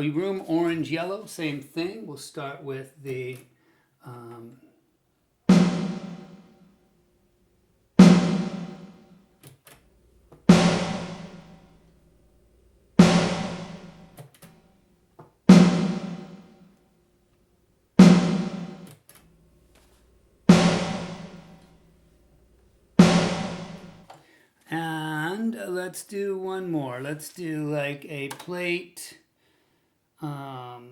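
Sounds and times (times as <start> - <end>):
snare drum hits with reverb: 5.5 - 6.3, 8.0 - 8.9, 10.4 - 11.8, 13.0 - 14.2, 15.5 - 16.4, 18.0 - 18.8, 20.5 - 21.8, 23.0 - 24.1.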